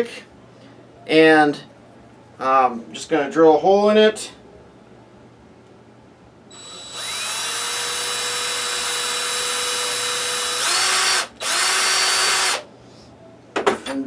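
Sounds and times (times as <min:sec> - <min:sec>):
electric drill drilling plastic: 0:06.5 - 0:12.6.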